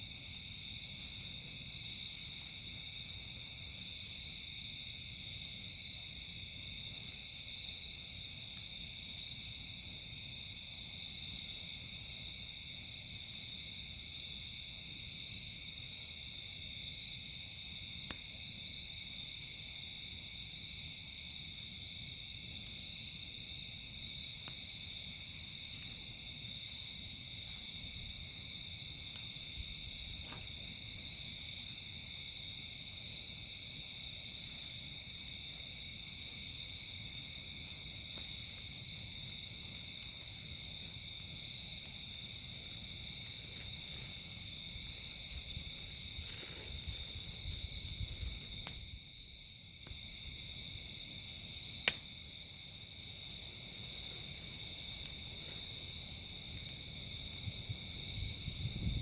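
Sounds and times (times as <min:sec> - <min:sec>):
crickets and insects chirping: 0:00.0 - 0:59.0
high insect trill: 0:00.0 - 0:59.0
campfire pops: 0:15.8 - 0:19.8, 0:22.4 - 0:59.0.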